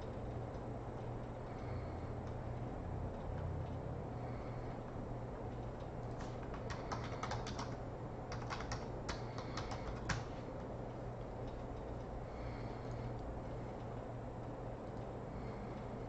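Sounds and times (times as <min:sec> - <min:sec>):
steady low hum: 0:00.0 - 0:16.0
computer keyboard typing: 0:05.6 - 0:10.4.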